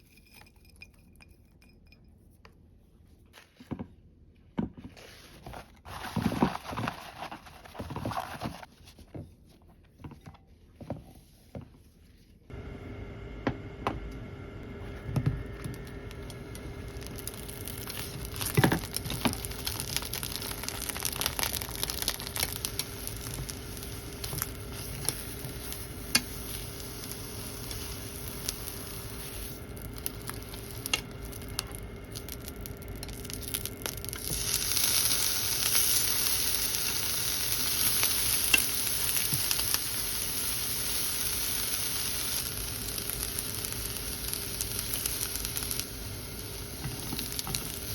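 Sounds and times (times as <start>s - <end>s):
steady low hum: 12.5s - 37.4s
vegetables sizzling in a pan: 15.7s - 47.9s.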